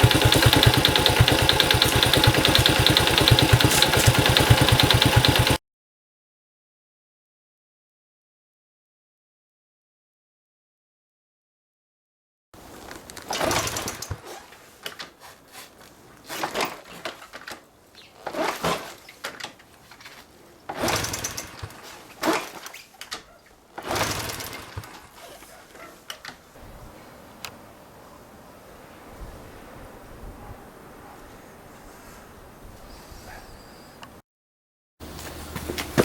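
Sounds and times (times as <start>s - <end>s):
motorcycle engine bursts: 0.0s - 5.6s, 20.7s - 21.8s, 23.8s - 25.3s.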